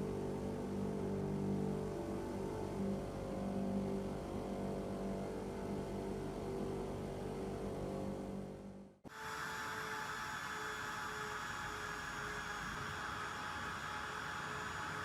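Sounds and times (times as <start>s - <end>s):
higher steady hum: 0.0s - 15.0s
power tool motor droning hum: 9.1s - 15.0s.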